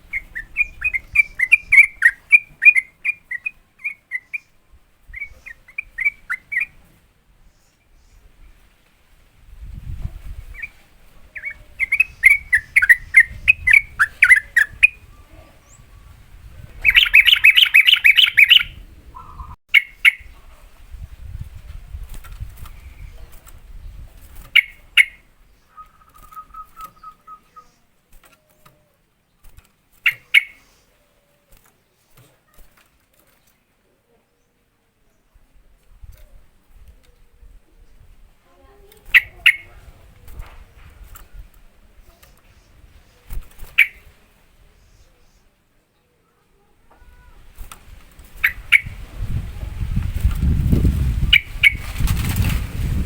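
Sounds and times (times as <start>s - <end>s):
fast bird trill: 0.0s - 4.5s, 5.1s - 6.8s, 11.4s - 15.1s, 16.8s - 20.4s, 24.5s - 25.2s, 39.1s - 39.7s, 43.6s - 44.1s, 48.4s - 49.3s, 50.4s - 52.2s
bulbul bubbling song: 0.1s - 4.4s, 16.8s - 20.3s
short bird calls: 10.4s - 16.2s, 16.8s - 20.4s, 24.5s - 29.0s, 30.0s - 32.7s.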